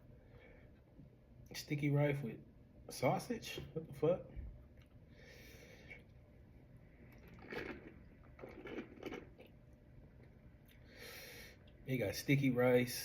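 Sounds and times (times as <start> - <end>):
chewing and mouth sounds: 7.0 - 10.8
soft crunches: 7.1 - 9.5.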